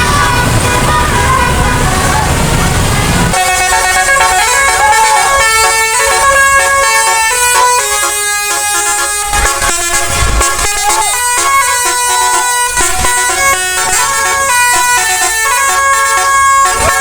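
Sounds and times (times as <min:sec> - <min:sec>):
musical air horn playing a tune: 0:00.0 - 0:17.0.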